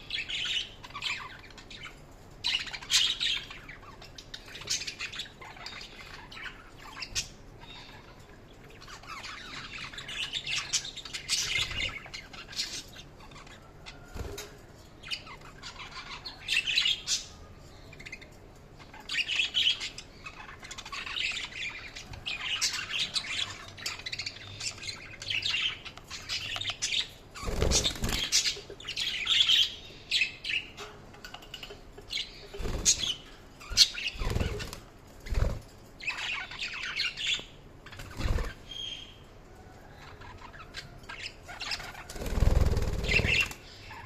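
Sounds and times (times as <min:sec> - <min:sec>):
budgerigars chirping: 0:18.9 - 0:39.2, 0:40.1 - 0:44.0
wing flapping: 0:27.4 - 0:28.4, 0:34.2 - 0:35.7, 0:42.0 - 0:43.5.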